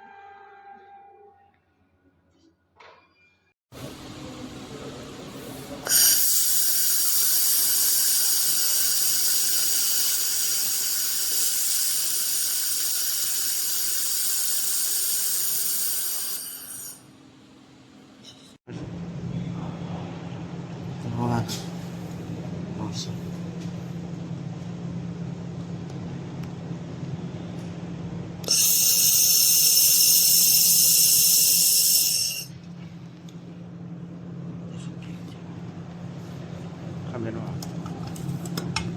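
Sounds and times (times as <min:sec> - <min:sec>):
laser head firing hiss: 0:05.9 - 0:16.5, 0:28.5 - 0:32.5
machine low hum: 0:32.5 - 0:38.9.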